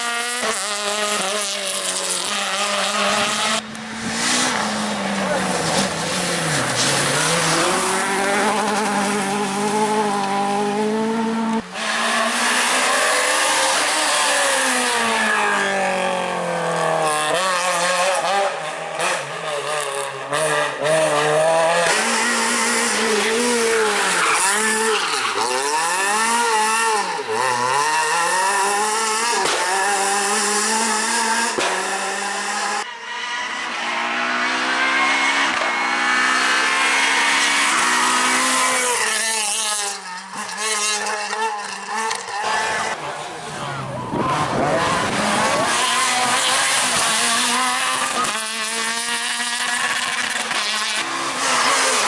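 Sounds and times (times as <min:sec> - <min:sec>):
rally car engine revving: 0:00.0 - 0:52.0.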